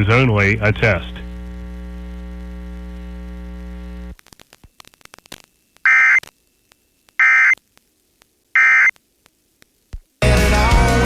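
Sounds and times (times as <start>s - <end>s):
electrical hum: 0.0s - 10.2s
buzzy data tone bursts: 4.8s - 6.3s, 7.1s - 7.6s, 8.5s - 8.9s.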